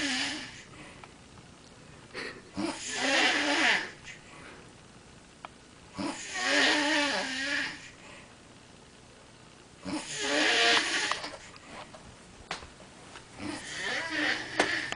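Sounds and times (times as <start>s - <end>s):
woman snoring: 0.0s - 0.7s, 2.2s - 4.2s, 6.0s - 8.0s, 9.8s - 11.4s, 13.4s - 14.9s
quiet breathing: 0.0s - 1.2s, 4.1s - 4.8s, 7.8s - 8.5s.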